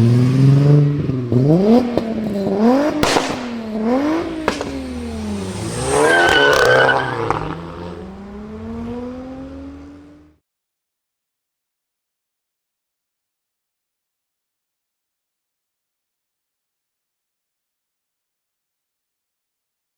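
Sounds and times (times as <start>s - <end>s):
car engine revving: 0.0s - 10.4s
exhaust pops and bangs: 2.9s - 5.1s
high squeal: 5.7s - 7.5s.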